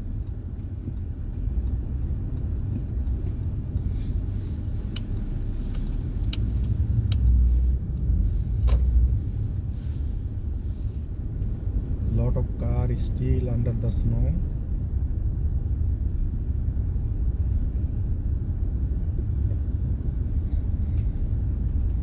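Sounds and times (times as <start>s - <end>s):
light ticks: 0.0s - 9.6s, 11.2s - 14.3s, 20.9s - 22.0s
car road rumble: 0.0s - 22.0s
sharp clicks: 0.2s - 8.9s.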